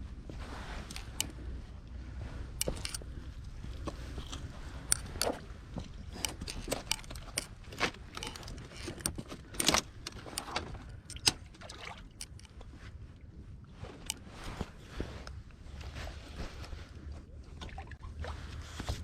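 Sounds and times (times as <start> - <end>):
steady low rumble: 0.0 - 19.0
handling clicks scrapes and knocks: 0.8 - 1.4, 2.5 - 12.6, 13.9 - 16.8.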